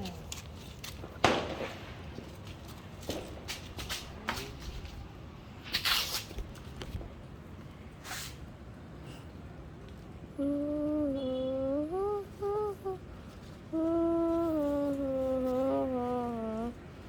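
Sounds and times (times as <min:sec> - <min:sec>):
person humming: 0:10.3 - 0:16.8.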